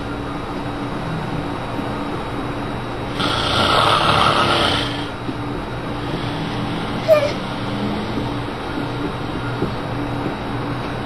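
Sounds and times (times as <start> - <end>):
steady low hum: 0.0 - 11.0
person snoring: 3.2 - 5.1.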